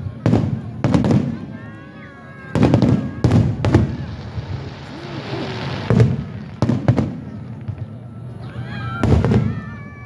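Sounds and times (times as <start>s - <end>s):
fireworks booming bursts: 0.0s - 1.7s, 2.3s - 10.0s
fireworks hissing crackle: 0.0s - 10.0s
fireworks high whistles: 2.5s - 10.0s.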